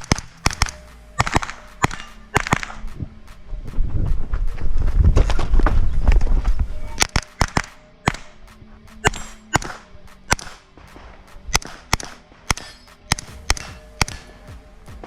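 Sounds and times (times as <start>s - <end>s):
gunshots: 0.0s - 3.4s, 7.0s - 14.6s.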